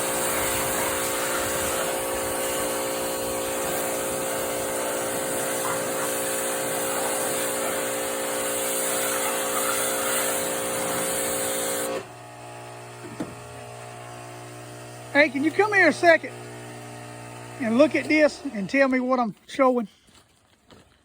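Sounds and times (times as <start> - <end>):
water spray hiss: 0.0 - 12.0
power washer running: 0.0 - 19.3.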